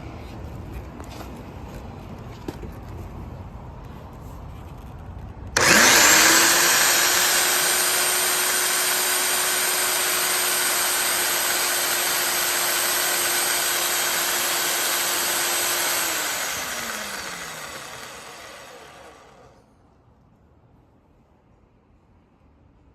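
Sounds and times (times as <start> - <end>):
core drill motor whining: 5.6 - 19.6.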